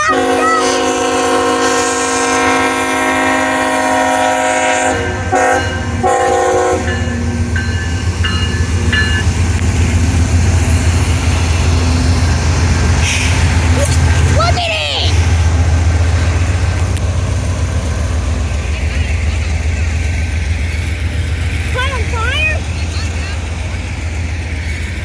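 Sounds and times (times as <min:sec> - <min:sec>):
train air horn: 0:00.0 - 0:07.0
train rumbling: 0:00.0 - 0:25.0.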